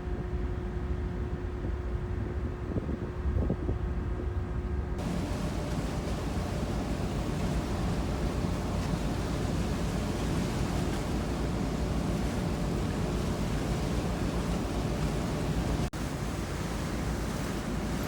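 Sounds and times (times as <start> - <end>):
wind: 0.0 - 18.0
rushing water: 5.0 - 18.0.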